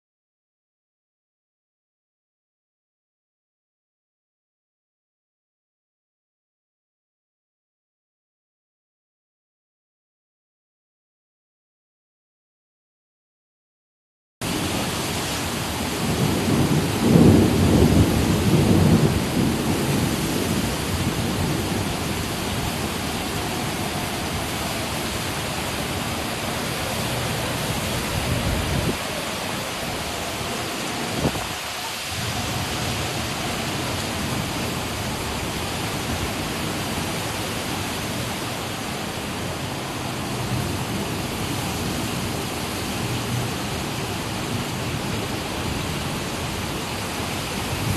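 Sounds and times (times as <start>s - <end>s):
heavy rain and wind rushing: 14.4s - 47.9s
thunder rumble: 14.5s - 39.7s.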